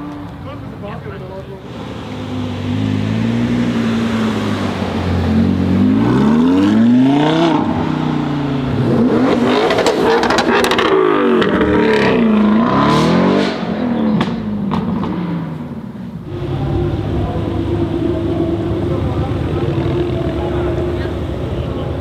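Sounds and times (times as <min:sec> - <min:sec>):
sports car engine revving: 0:01.6 - 0:22.0
exhaust crackles and pops: 0:14.1 - 0:15.7.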